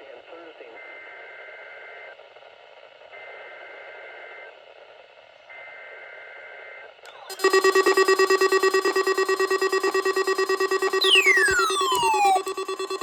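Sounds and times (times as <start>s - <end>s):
pulsing attention tone: 7.3s - 13.0s
raspy two-pitch data tone: 7.3s - 13.0s.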